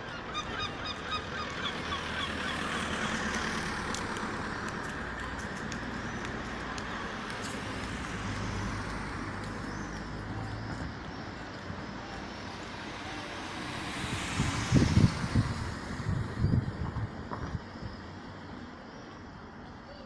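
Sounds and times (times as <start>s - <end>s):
gulls calling: 0.0s - 3.7s.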